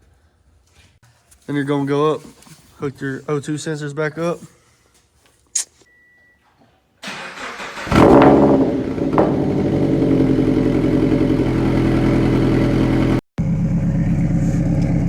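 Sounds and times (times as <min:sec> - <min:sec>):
car engine starting and idling: 0:07.0 - 0:15.0.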